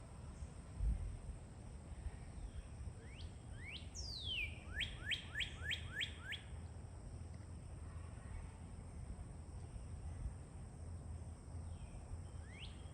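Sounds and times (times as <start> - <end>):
songbird singing: 2.0 - 6.8, 11.2 - 12.9.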